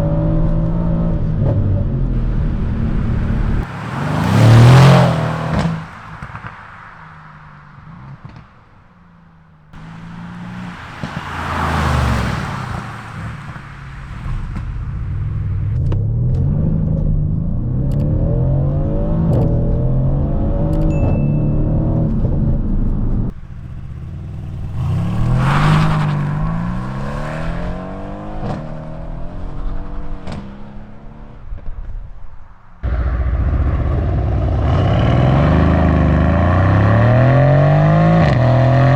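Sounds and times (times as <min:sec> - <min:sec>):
car engine accelerating: 0:00.0 - 0:38.9
car passing by loudly: 0:02.1 - 0:08.9, 0:09.8 - 0:15.8, 0:23.3 - 0:38.9.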